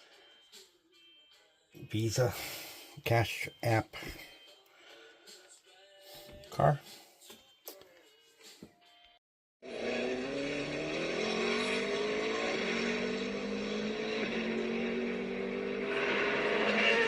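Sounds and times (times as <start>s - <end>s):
racing car engine high revs: 9.6s - 17.0s.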